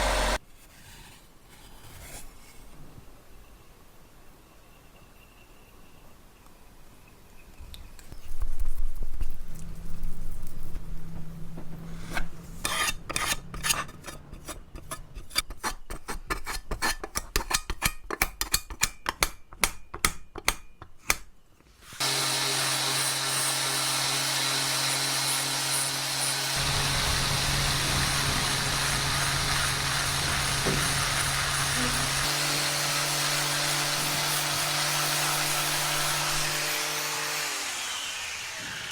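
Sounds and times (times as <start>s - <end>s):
power tool whining: 0.0s - 0.4s, 21.9s - 38.9s
tool rubbing on workpiece: 11.6s - 17.1s, 25.7s - 36.8s.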